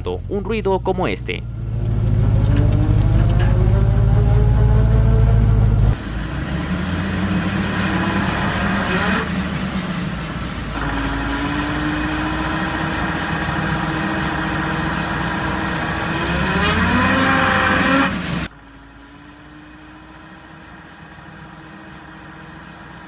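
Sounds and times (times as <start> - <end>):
road and engine noise: 0.0 - 23.0
differential whining: 1.2 - 19.6.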